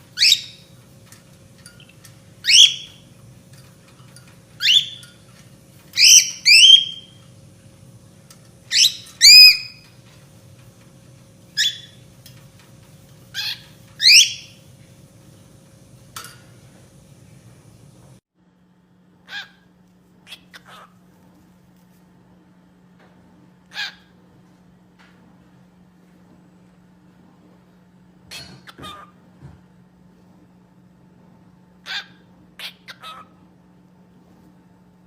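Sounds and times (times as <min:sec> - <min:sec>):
bird upward-sweeping calls: 0:00.2 - 0:00.6, 0:02.4 - 0:03.0, 0:06.0 - 0:07.2, 0:08.7 - 0:09.8, 0:13.4 - 0:14.6.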